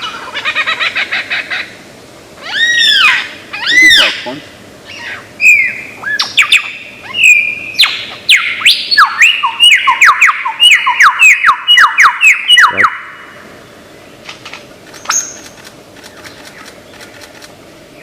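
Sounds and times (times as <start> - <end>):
lyrebird whistles and squawks: 4.9 - 13.0.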